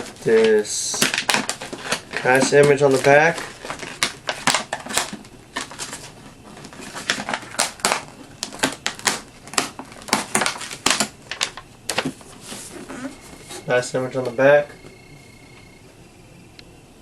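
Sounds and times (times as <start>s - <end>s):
sharp taps and light crinkles: 0.0s - 12.4s
cardboard packaging handled: 0.0s - 14.9s.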